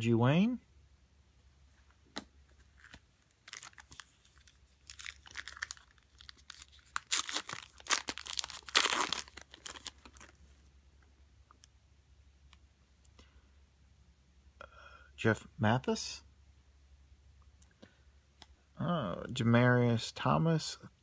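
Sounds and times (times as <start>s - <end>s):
foil wrapper tearing and crinkling: 2.8s - 10.4s.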